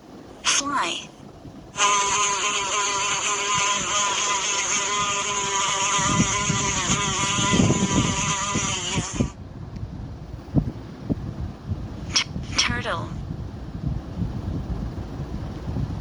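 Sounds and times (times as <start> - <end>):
housefly buzzing: 1.8 - 9.4.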